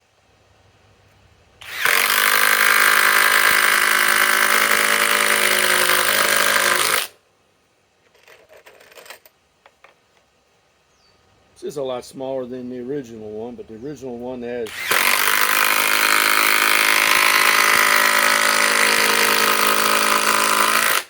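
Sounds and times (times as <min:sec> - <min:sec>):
impact driver hammering: 0:01.6 - 0:07.1, 0:14.7 - 0:21.0.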